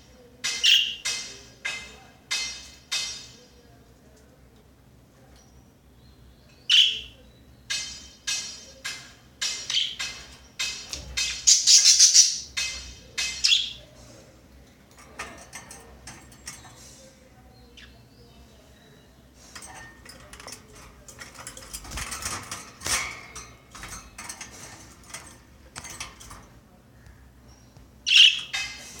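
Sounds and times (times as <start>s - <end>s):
budgerigar chirping: 28.1s - 28.6s.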